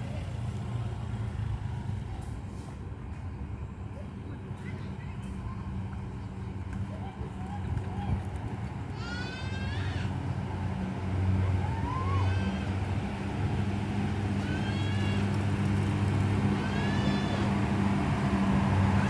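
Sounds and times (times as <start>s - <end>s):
bus diesel engine droning: 0.0s - 7.2s, 8.6s - 19.0s.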